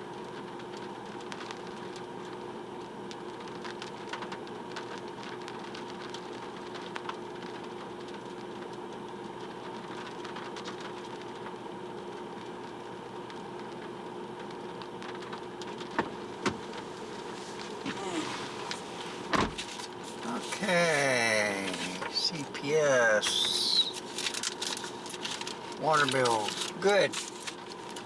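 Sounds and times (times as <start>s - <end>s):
car engine idling: 15.9s - 22.6s.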